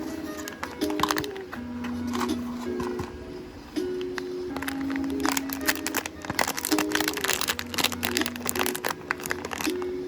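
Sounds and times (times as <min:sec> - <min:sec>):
background music with held notes: 0:00.0 - 0:10.0
plastic packaging crinkling: 0:00.3 - 0:02.8, 0:04.0 - 0:10.0.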